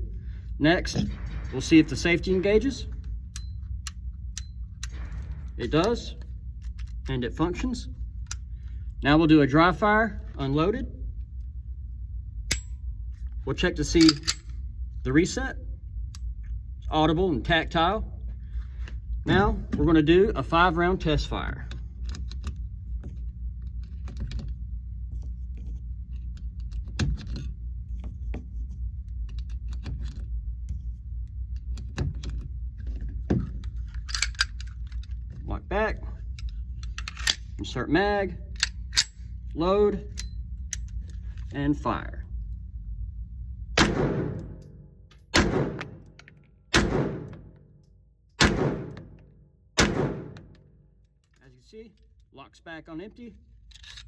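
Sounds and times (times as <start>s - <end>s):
low hum: 0.0s - 54.0s
cartridges clicking into magazine: 14.0s - 14.6s, 33.9s - 35.1s, 36.4s - 37.5s, 38.5s - 39.2s
pistol shots: 43.8s - 44.7s, 45.3s - 46.1s, 46.7s - 47.5s, 48.4s - 49.2s, 49.8s - 50.6s.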